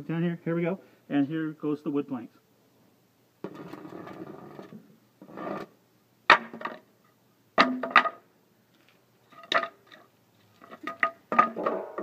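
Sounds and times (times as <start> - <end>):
wooden planks clattering: 9.3 - 12.0.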